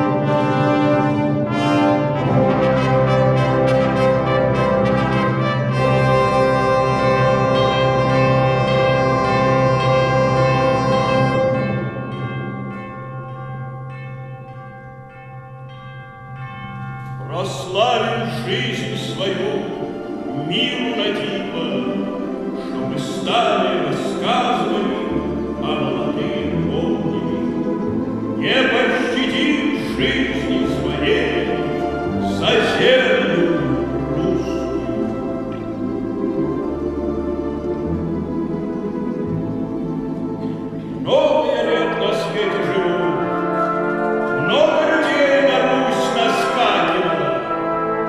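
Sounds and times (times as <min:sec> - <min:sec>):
folk-instrument orchestra: 0:00.0 - 0:48.0
mixed choir singing held notes: 0:18.2 - 0:48.0.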